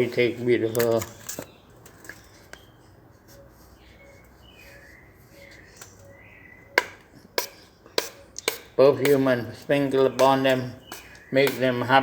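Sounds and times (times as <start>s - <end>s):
small objects clicking and rustling: 0.7s - 2.6s.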